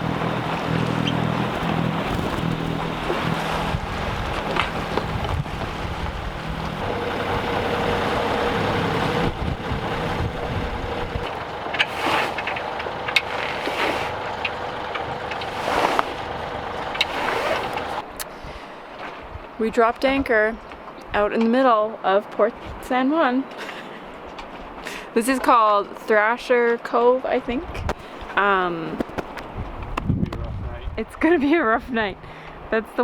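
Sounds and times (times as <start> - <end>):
wind buffeting microphone: 0.0 - 18.0, 29.3 - 32.7
engine humming: 0.0 - 18.1
water rushing past hull: 0.0 - 18.2.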